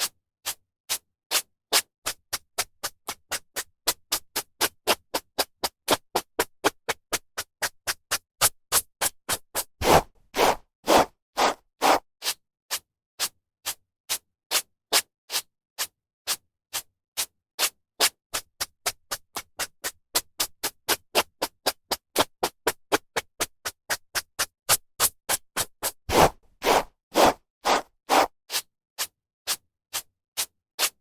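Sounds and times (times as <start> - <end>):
hairbrush swishing through hair: 9.8 - 12.0, 26.1 - 28.6.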